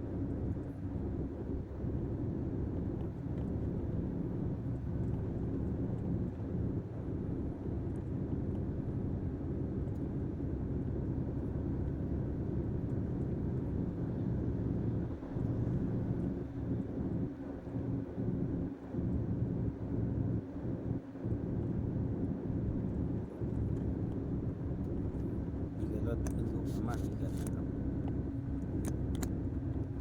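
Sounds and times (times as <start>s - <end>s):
truck engine rumble: 21.1s - 30.0s.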